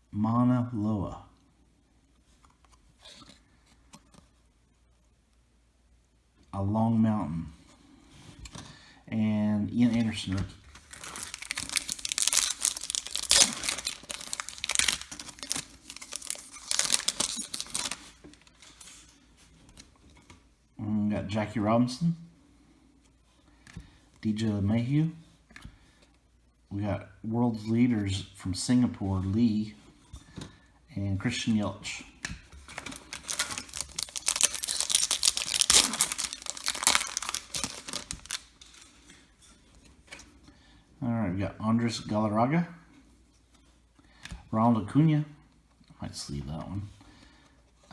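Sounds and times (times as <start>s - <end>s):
trading cards and foil wrapper rustling: 9.9s - 19.1s, 32.6s - 39.2s.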